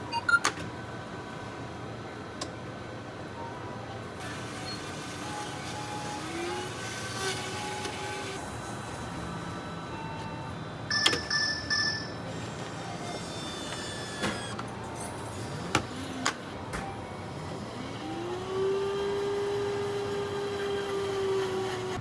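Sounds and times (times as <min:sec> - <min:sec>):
steady background hum: 0:00.0 - 0:22.0.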